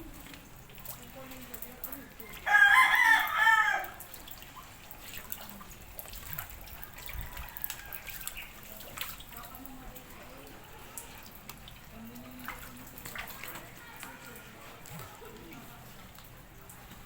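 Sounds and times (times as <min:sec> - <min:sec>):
rooster crowing: 0:02.4 - 0:04.0.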